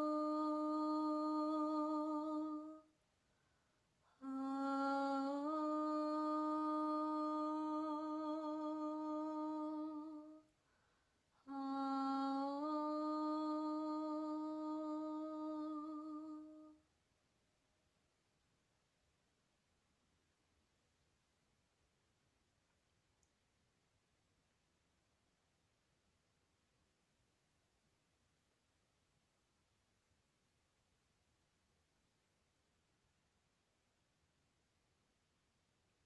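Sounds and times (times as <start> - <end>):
person humming long notes: 0.0 - 2.9, 4.2 - 10.5, 11.4 - 16.8.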